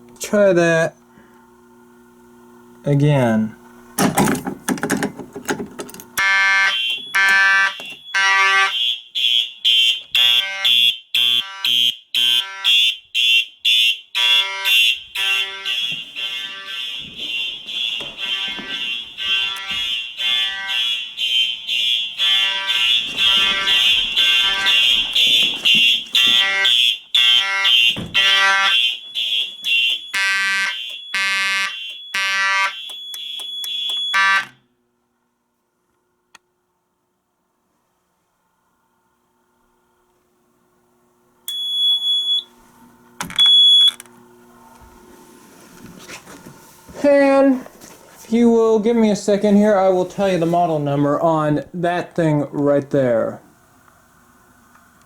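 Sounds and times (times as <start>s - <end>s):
high-pitched alarm tone: 6.2s - 34.6s
fire alarm horns pulsing: 6.2s - 34.7s, 41.5s - 42.5s, 43.4s - 44.0s.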